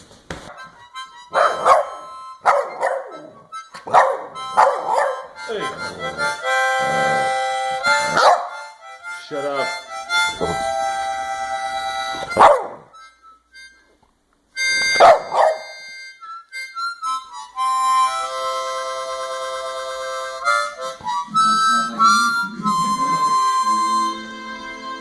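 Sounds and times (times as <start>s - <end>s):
harmonica chords: 0.5s - 25.0s
dog barking: 1.3s - 5.3s, 8.2s - 8.6s, 12.4s - 12.9s, 15.0s - 15.7s.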